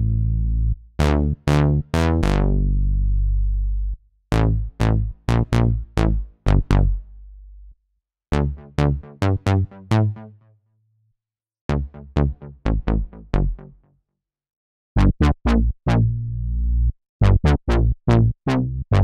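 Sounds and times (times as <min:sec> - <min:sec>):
synthesizer bass riff: 0:00.0 - 0:07.0, 0:08.3 - 0:10.3, 0:11.7 - 0:13.8, 0:15.0 - 0:19.0.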